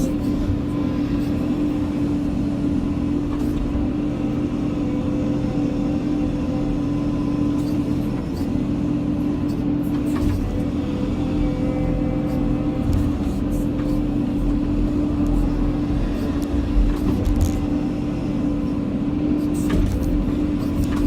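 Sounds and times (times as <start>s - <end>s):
excavator engine and hydraulics: 0.0s - 21.0s.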